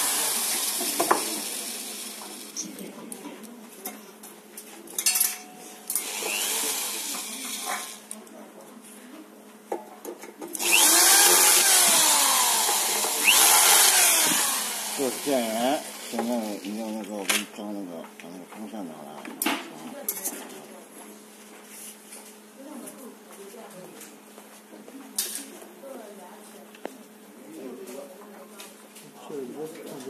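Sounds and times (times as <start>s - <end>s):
small power tool running: 0.0s - 2.8s, 5.9s - 8.2s, 10.6s - 16.8s.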